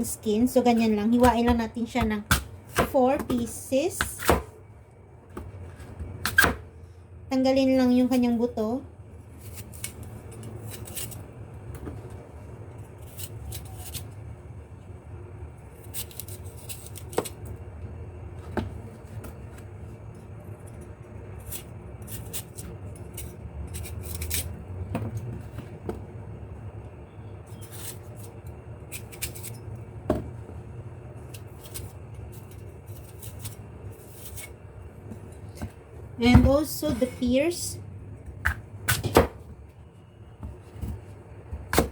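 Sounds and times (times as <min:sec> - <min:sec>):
knife cutting apples: 0:00.0 - 0:04.5, 0:05.4 - 0:06.7, 0:09.3 - 0:11.3, 0:12.8 - 0:14.2, 0:15.7 - 0:17.4, 0:21.4 - 0:26.0, 0:27.5 - 0:30.4, 0:31.2 - 0:37.7
low steady hum: 0:00.0 - 0:41.9.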